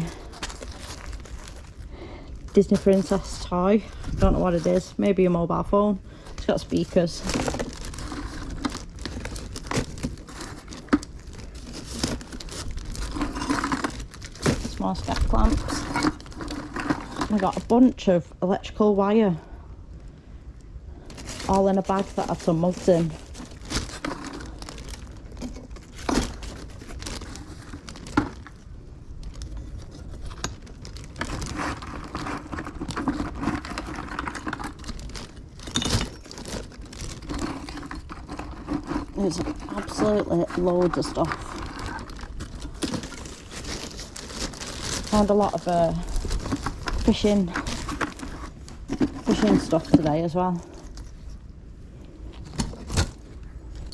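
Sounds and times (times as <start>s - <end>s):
rustling and crinkling: 0.0s - 53.9s.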